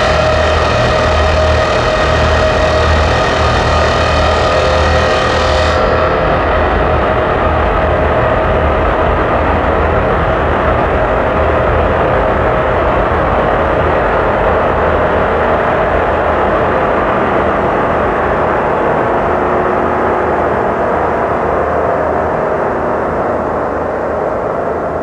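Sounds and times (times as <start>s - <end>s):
droning noise music: 0.0s - 25.0s.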